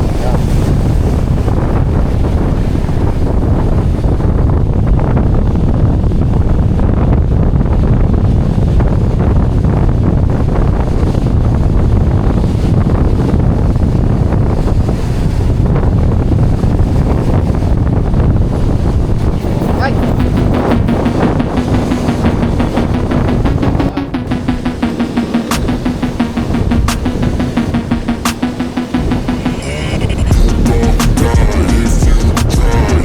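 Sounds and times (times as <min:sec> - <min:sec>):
wind buffeting microphone: 0:00.0 - 0:31.4
surf washing on beach: 0:10.4 - 0:30.3.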